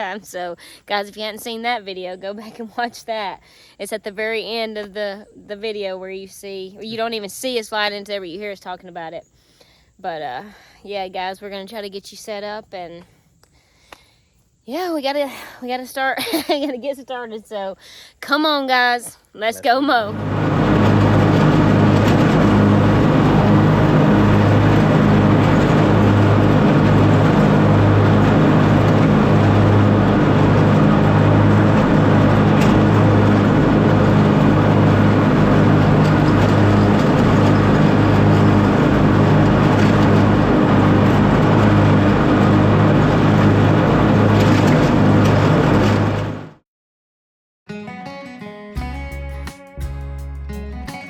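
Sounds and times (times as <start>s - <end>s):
lawn mower engine running: 19.5s - 46.6s.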